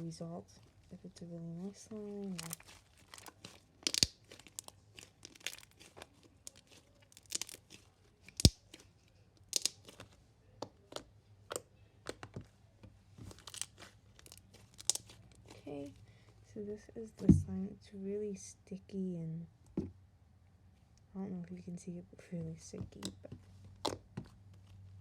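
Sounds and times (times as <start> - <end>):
slime clicking and popping: 2.3 - 12.4, 13.3 - 15.5.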